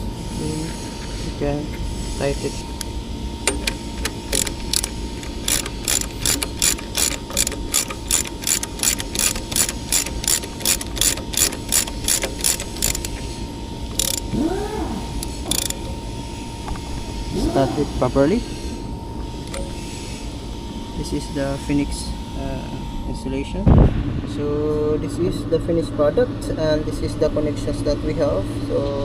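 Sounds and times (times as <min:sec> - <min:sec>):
ratchet wrench clicking: 0:02.8 - 0:14.3, 0:15.2 - 0:16.0.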